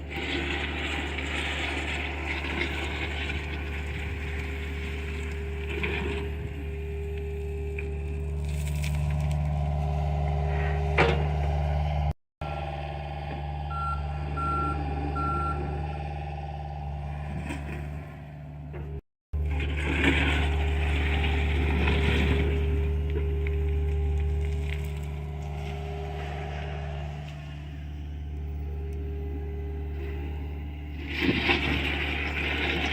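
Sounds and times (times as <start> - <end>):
digging crunching and scraping: 0.0 - 12.1, 19.4 - 32.9
excavator diesel engine running: 0.0 - 32.9
short beeps: 13.7 - 15.7.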